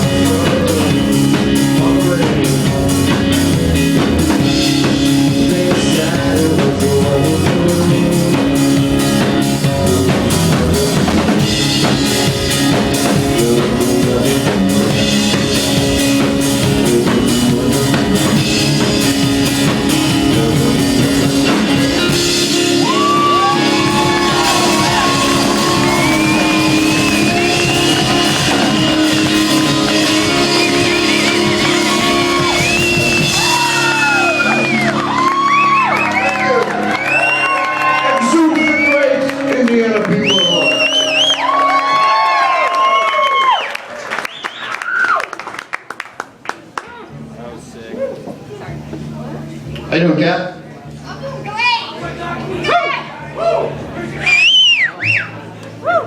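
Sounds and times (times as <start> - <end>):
rock band playing loudly: 0.0 - 42.9
crowd whooping and whistling: 22.7 - 39.4, 40.1 - 45.4, 54.2 - 56.0.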